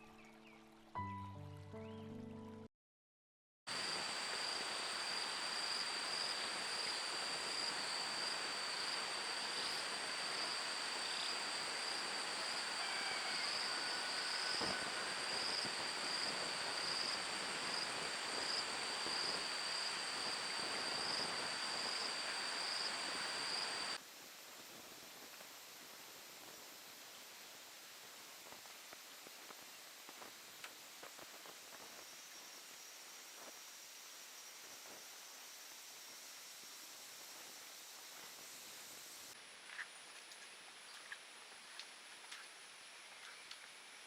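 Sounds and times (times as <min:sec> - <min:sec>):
insects whining: 0:03.7 - 0:24.0
hiss: 0:03.7 - 0:39.4.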